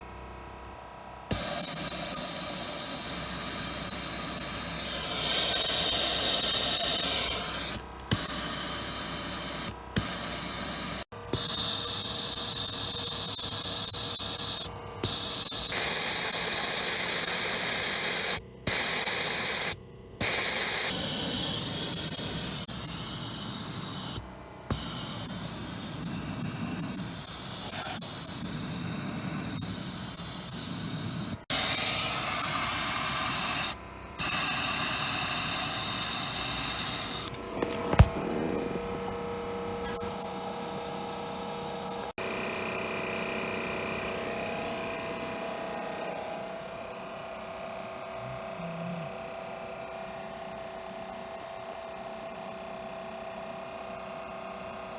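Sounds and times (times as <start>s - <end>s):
spray gun hissing: 1.3s - 38.3s, 39.8s - 42.1s.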